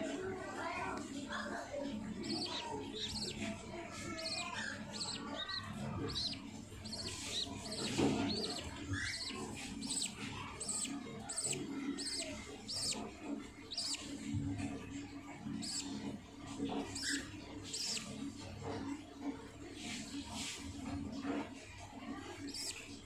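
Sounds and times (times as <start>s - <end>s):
budgerigars chirping: 1.8s - 18.5s, 22.3s - 22.9s.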